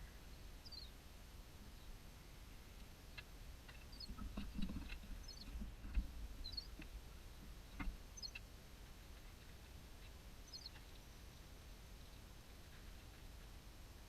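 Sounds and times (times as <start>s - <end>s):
small bird chirping: 0.0s - 1.0s, 3.1s - 5.6s, 6.4s - 8.5s, 9.2s - 11.4s.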